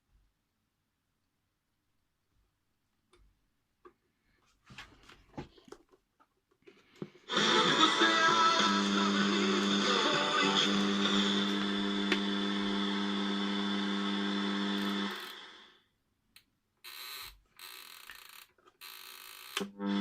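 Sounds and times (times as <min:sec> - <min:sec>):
alarm clock buzzer: 0:13.4 - 0:15.7, 0:16.9 - 0:20.0.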